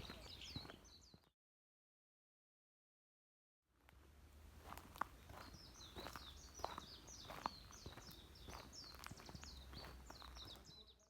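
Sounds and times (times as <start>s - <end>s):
songbird twittering: 0.0s - 1.2s, 5.3s - 11.0s.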